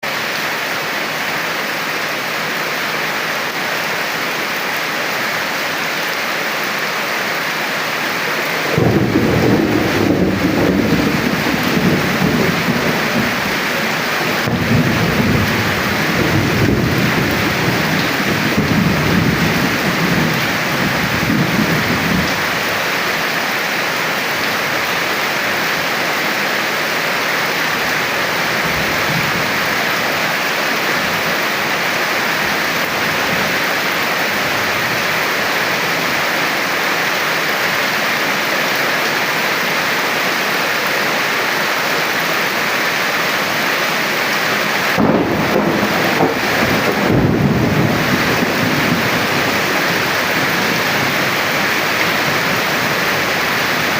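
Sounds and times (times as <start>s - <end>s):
heavy rain hissing: 0.0s - 53.9s
thunder rumbling: 8.6s - 22.8s, 44.9s - 53.9s.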